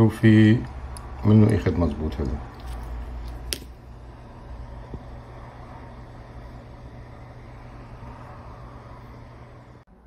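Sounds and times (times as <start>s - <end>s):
low hum: 2.4s - 10.0s.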